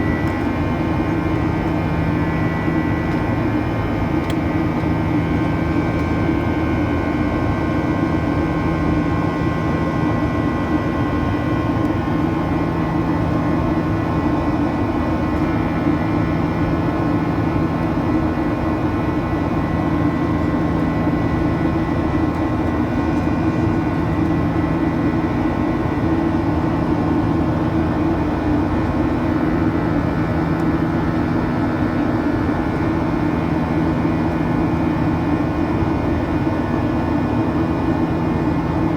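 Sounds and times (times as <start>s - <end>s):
jet engines droning: 0.0s - 38.9s.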